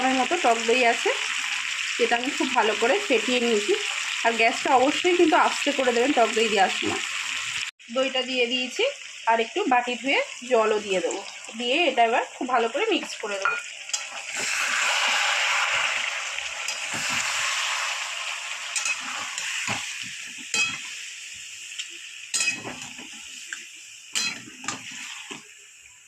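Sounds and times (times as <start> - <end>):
food sizzling in a pan: 0.0 - 26.0
spatula knocking and scraping pan: 18.8 - 20.9, 22.4 - 23.2.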